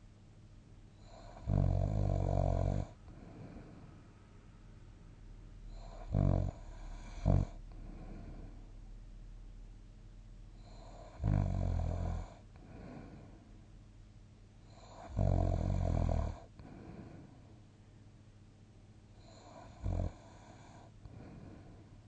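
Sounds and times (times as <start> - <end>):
person snoring: 1.0 - 3.8, 5.7 - 8.6, 10.6 - 13.3, 14.7 - 17.2, 19.2 - 21.8
soft breath: 3.0 - 4.4, 6.6 - 8.9, 12.4 - 13.7, 16.3 - 17.9, 19.1 - 22.0.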